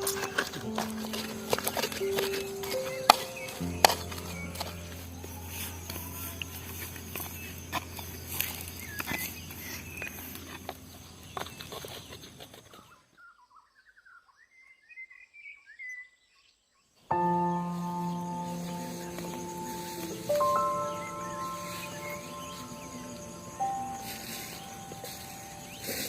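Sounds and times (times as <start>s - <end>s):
music: 0.0s - 7.2s, 17.1s - 26.0s
crackles and clicks: 0.0s - 12.8s
bird chirps: 0.0s - 26.0s.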